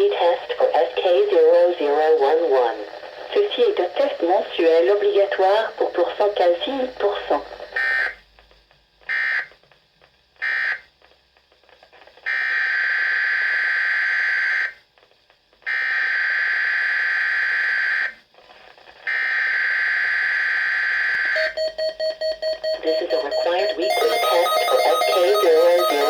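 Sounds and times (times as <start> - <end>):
harsh buzzing data tones: 21.2 - 26.0.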